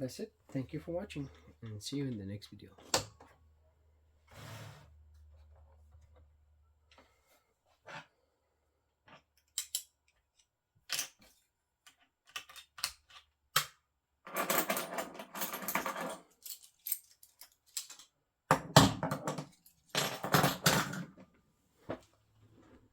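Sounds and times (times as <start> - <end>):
small hard parts clicking: 9.4 - 11.2.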